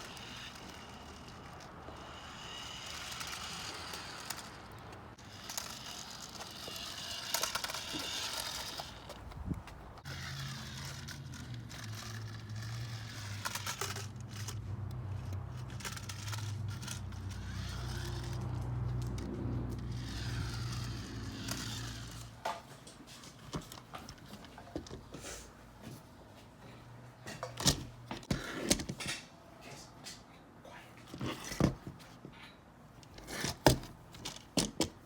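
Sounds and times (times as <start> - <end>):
toy car electric motor whine: 0.0 - 9.4, 10.0 - 22.4
tyres scraping over ground: 0.0 - 25.4.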